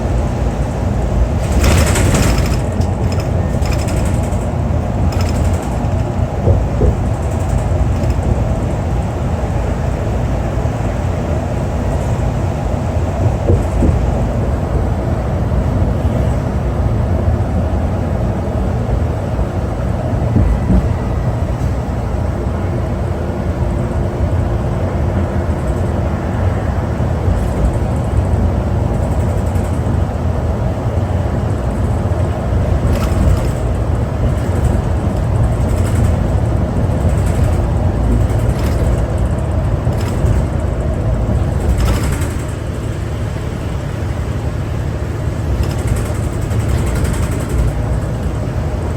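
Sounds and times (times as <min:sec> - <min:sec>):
bus engine low rumble: 0:00.0 - 0:48.9
road noise: 0:00.0 - 0:48.9
short rattles: 0:01.3 - 0:09.2, 0:31.5 - 0:43.8, 0:45.1 - 0:48.9.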